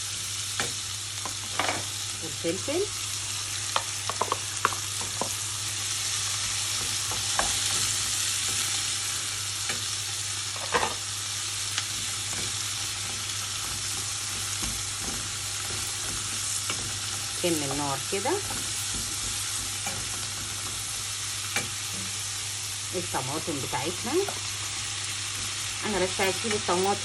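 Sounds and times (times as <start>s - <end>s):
vegetables sizzling in oil: 0.0s - 27.0s
spoon scraping a pan: 6.5s - 11.1s, 11.8s - 22.3s.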